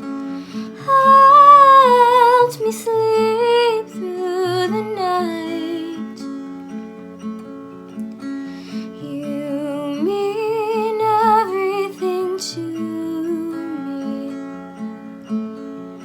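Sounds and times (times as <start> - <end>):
wordless female vocal: 0.0 - 6.2, 8.8 - 14.5
fingerpicked acoustic guitar: 0.0 - 16.0.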